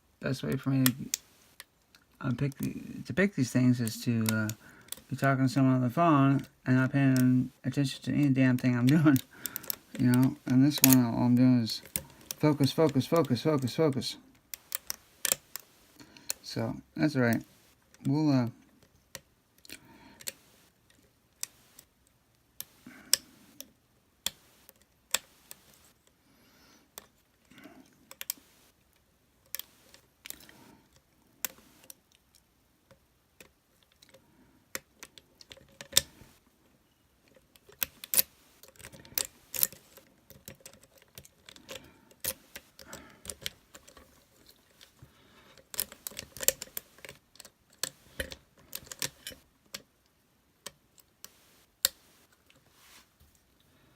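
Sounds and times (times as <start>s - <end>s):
lock pick clicking against pins: 8.2s - 16.4s, 27.0s - 28.7s, 31.4s - 36.4s, 37.3s - 49.9s.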